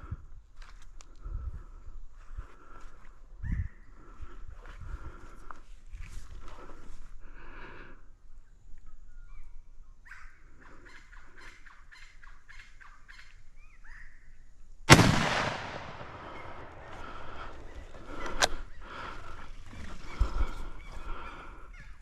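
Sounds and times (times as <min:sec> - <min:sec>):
rifle shot with echo: 0:14.9 - 0:18.6
birds chattering: 0:16.1 - 0:22.0.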